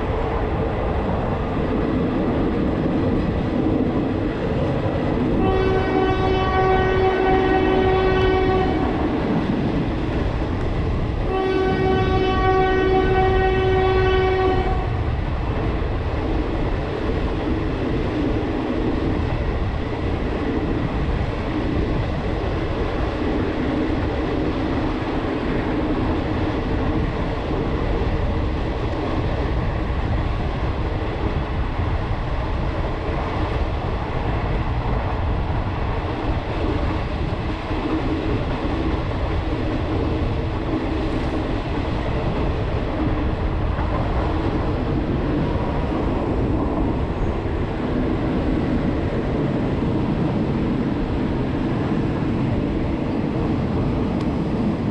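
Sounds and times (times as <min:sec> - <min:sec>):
train rumbling on rails: 0:00.0 - 0:54.9
train horn blasts: 0:05.4 - 0:09.0, 0:11.2 - 0:15.0.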